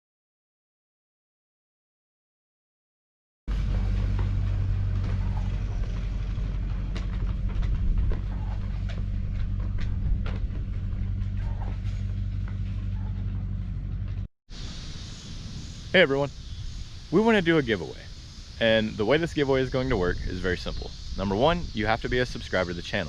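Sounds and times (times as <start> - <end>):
engine running steadily: 3.5 - 14.3
rattles and clicks: 3.5 - 14.3.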